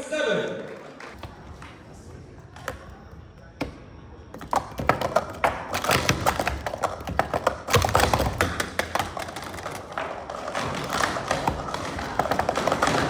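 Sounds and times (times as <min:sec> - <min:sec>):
plastic cups clattering on table: 0:04.3 - 0:13.0.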